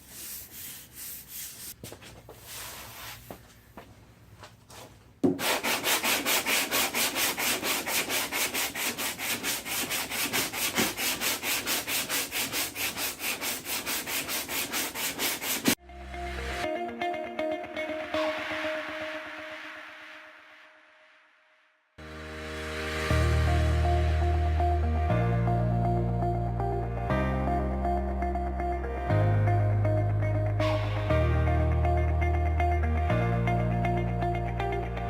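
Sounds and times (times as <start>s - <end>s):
hand sanding on metal: 0.0s - 1.8s, 5.4s - 15.8s.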